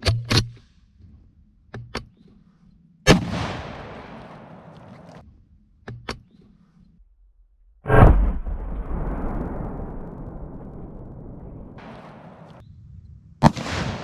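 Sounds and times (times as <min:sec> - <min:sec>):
shotgun blast with echo: 0:07.9 - 0:12.6, 0:13.4 - 0:14.0.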